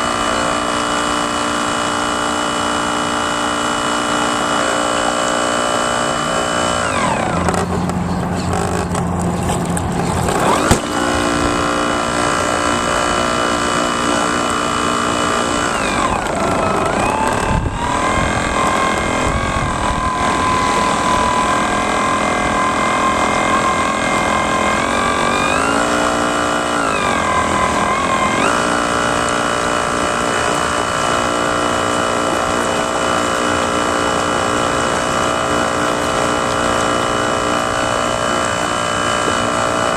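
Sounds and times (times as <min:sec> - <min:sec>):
model boat motors whining: 0:00.0 - 0:39.9.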